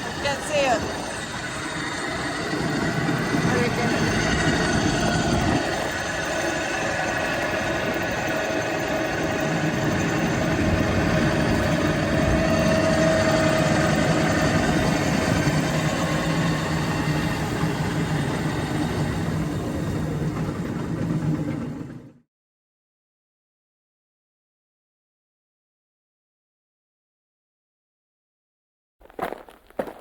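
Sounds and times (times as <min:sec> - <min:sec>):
engine drone with low hum: 0:00.0 - 0:20.1.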